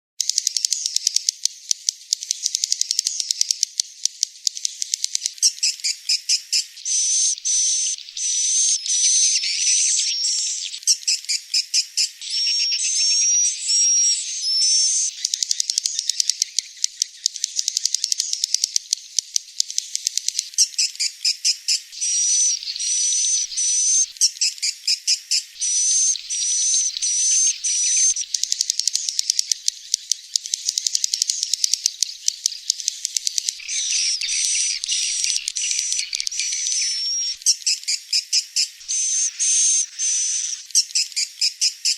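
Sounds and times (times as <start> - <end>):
swiftlet chattering clicks: 0.2 - 5.6, 15.2 - 20.9, 25.6 - 37.8
short high bird chirps: 6.8 - 11.4, 22.0 - 24.2, 25.6 - 29.9, 33.6 - 41.7.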